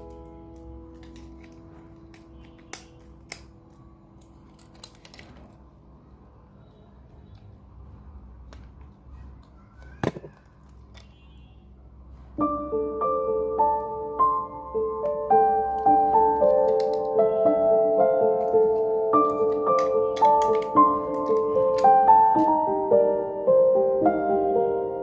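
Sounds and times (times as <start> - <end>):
piano notes: 0.0 - 5.2, 12.2 - 25.0
hand tools clicking on phone parts: 15.8 - 17.2, 18.4 - 22.6.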